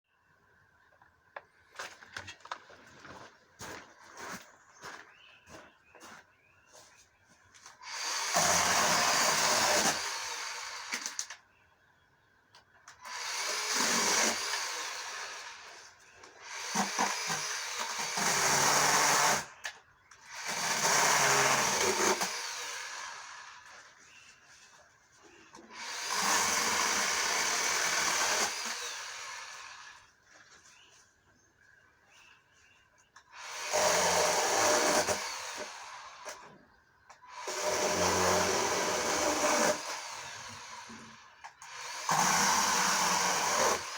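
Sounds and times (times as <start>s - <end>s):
electric chainsaw cutting branches: 7.8s - 11.4s, 13.0s - 23.8s, 25.6s - 30.1s, 33.3s - 36.5s, 37.2s - 43.9s.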